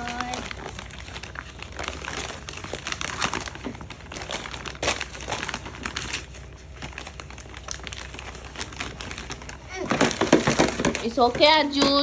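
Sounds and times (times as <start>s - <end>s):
gift wrapping crinkling: 0.0s - 12.0s
paper ripping: 0.0s - 12.0s.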